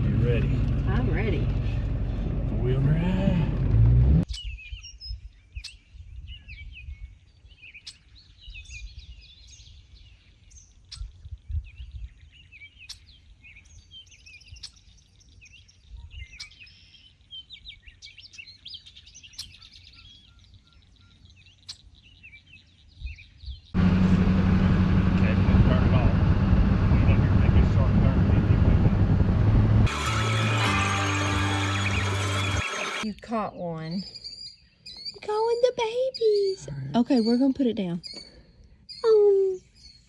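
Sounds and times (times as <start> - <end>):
low uneven rumble: 0.0 - 4.3, 23.8 - 33.0
small birds chirping: 4.2 - 23.8, 30.0 - 40.0.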